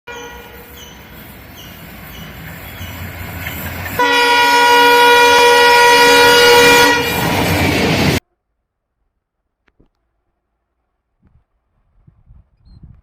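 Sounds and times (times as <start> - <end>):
train horn blast: 0.1 - 3.0, 3.9 - 7.3
train rumble: 0.1 - 8.2.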